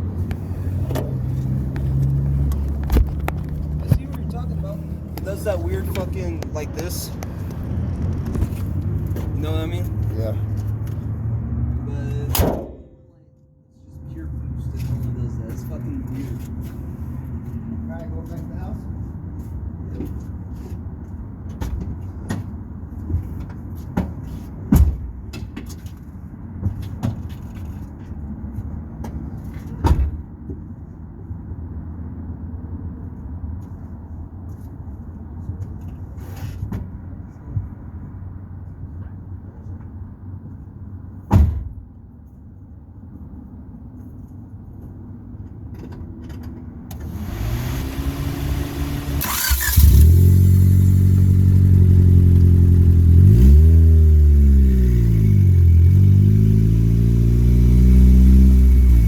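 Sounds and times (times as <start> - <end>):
car engine running and revving: 0.2 - 12.2, 47.0 - 59.0
sharp thumps: 12.3 - 13.3.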